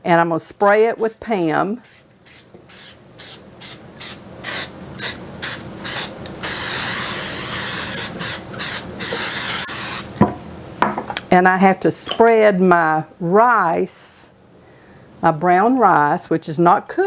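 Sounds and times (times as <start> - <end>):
aerosol spray hissing: 0.6 - 10.1.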